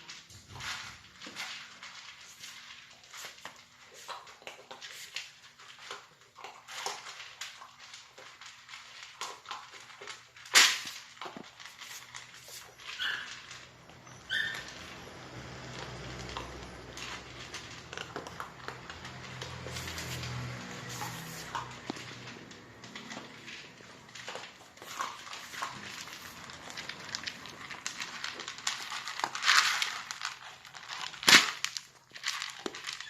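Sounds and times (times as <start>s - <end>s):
high squeaks: 12.6s - 15.2s.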